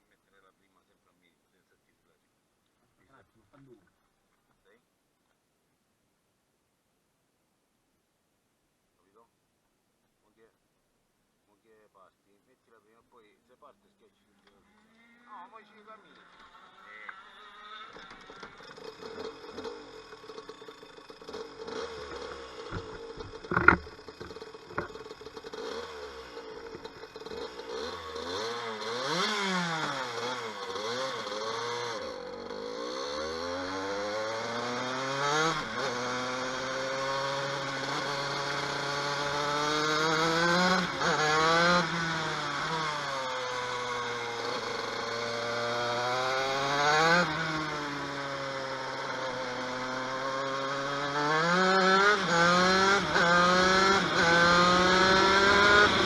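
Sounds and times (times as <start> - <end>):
kart engine revving: 14.4 - 56.0.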